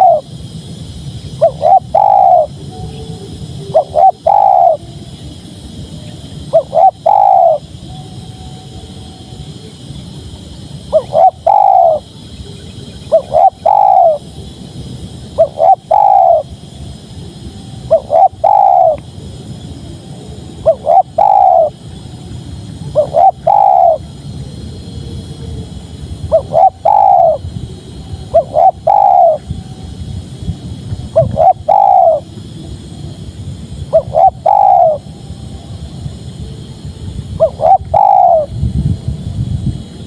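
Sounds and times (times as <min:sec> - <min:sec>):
dove cooing: 0:00.0 - 0:00.3, 0:01.4 - 0:05.1, 0:06.4 - 0:07.8, 0:10.8 - 0:14.3, 0:15.3 - 0:16.5, 0:17.9 - 0:29.7, 0:31.0 - 0:33.2, 0:33.9 - 0:35.0, 0:36.9 - 0:38.5.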